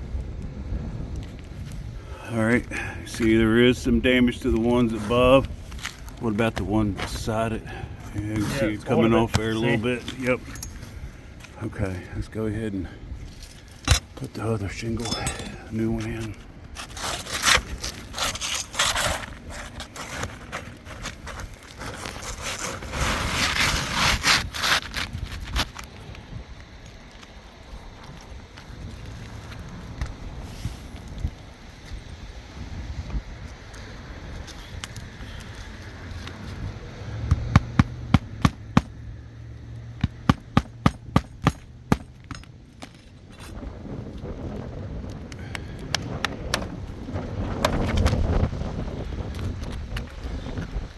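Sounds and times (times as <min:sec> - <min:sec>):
roof shingle scraping and rustling: 0:01.3 - 0:12.5, 0:13.2 - 0:31.0, 0:41.0 - 0:50.9.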